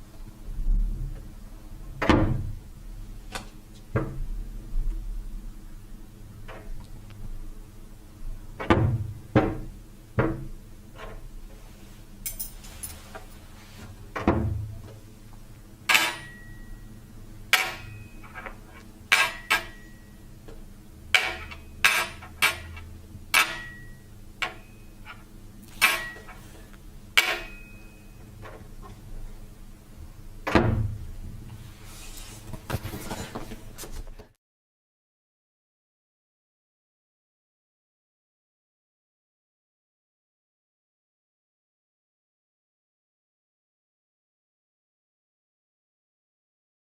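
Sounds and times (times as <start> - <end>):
knocks and clinks on objects: 12.2 - 13.4, 15.9 - 16.7, 17.5 - 20.1
sharp ringing hits: 15.9 - 16.9, 23.4 - 24.9, 27.2 - 28.2.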